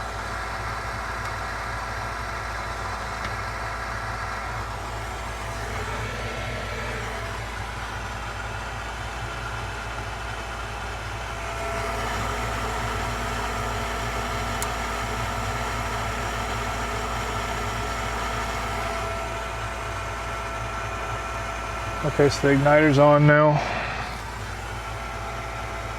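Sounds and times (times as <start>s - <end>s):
motor humming: 4.3s - 8.4s, 11.0s - 25.9s
steady whine: 4.4s - 8.8s, 11.2s - 25.9s.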